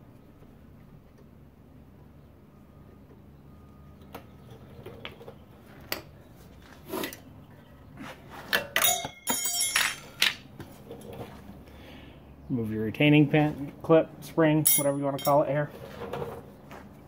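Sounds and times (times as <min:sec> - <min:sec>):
metal tools clinking: 0:08.5 - 0:11.2, 0:14.6 - 0:15.7.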